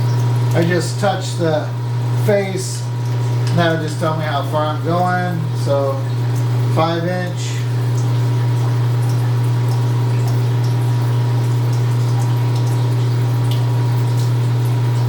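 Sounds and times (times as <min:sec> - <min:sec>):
faint ticks and drips: 0:05.0 - 0:15.0.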